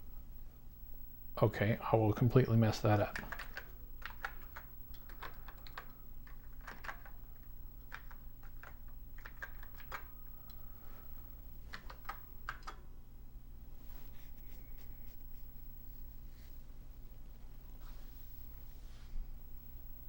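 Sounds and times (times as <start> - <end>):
steady low hum: 0.0 - 20.0
keyboard keystrokes clicking: 3.1 - 7.2, 7.9 - 10.6, 11.7 - 12.8.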